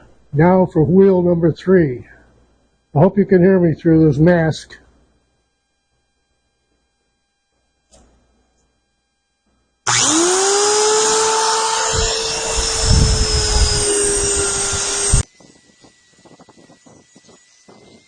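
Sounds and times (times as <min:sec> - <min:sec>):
electric grinder whining: 0:09.9 - 0:18.0
low rough grinding noise: 0:09.9 - 0:18.0.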